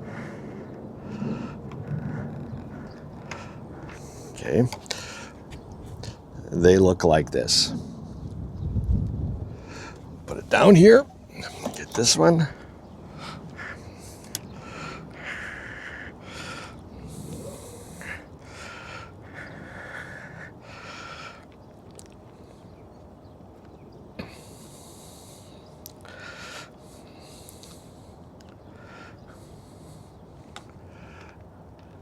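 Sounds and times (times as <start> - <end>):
person breathing through nose: 13.2 - 21.5, 24.2 - 30.2.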